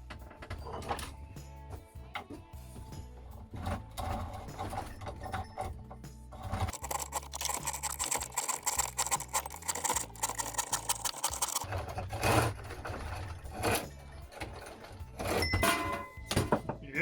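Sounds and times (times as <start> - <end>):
chainsaw rattling: 6.5 - 15.4.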